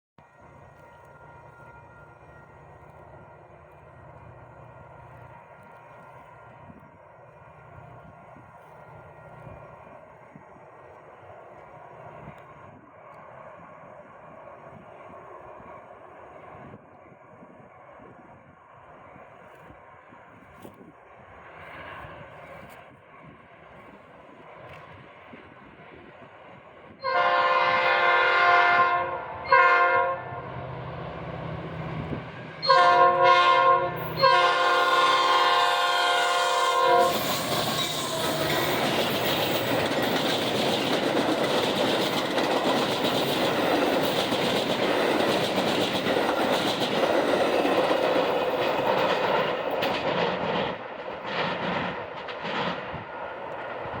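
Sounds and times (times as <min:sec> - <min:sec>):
train on the rails: 0:00.2 - 0:54.0
train air horn: 0:27.0 - 0:30.5, 0:32.6 - 0:38.5.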